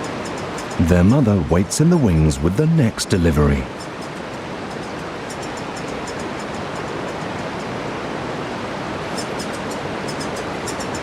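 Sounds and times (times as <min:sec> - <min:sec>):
river rushing: 0:00.0 - 0:11.0
woodpecker chicks begging calls: 0:03.2 - 0:07.7.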